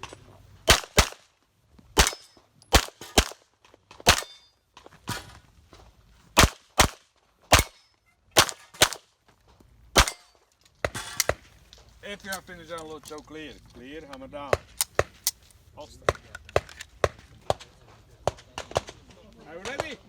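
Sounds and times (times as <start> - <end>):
pistol shots: 0.7 - 1.2, 2.0 - 3.4, 4.0 - 4.5, 6.4 - 9.0, 10.0 - 10.3.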